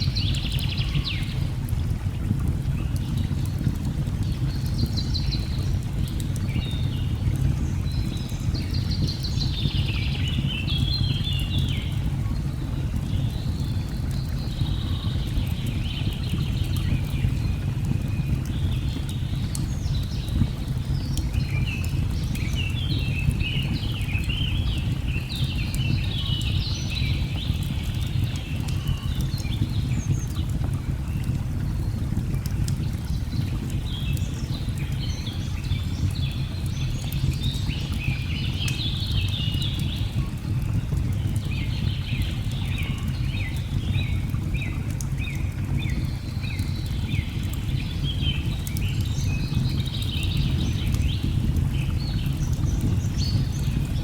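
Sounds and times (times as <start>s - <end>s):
log fire crackling: 12.9s - 54.0s.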